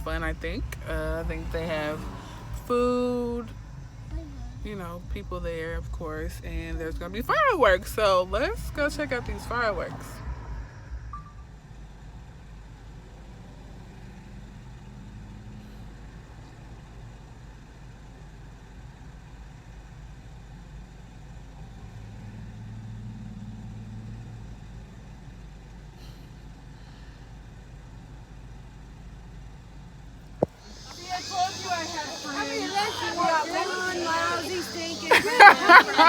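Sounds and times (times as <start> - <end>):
low hum: 0.0 - 13.6
car road and engine noise: 0.0 - 36.0.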